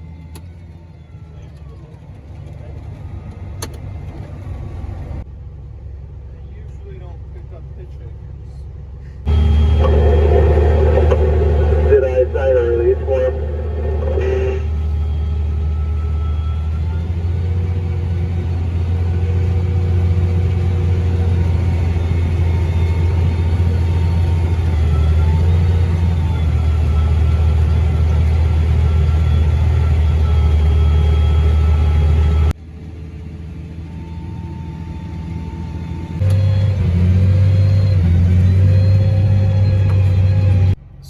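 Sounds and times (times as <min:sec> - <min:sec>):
diesel engine deep rumble: 0:00.0 - 0:41.0
faint whining tones: 0:09.0 - 0:40.8.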